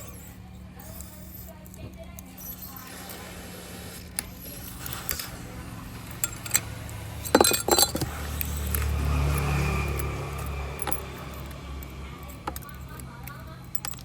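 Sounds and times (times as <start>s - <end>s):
small hard objects clinking: 4.2s - 14.0s.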